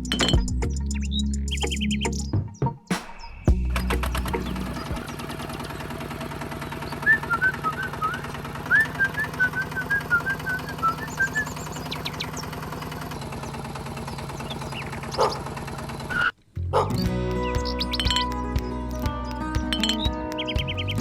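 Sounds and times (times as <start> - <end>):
small motor rattling: 3.6 - 16.4.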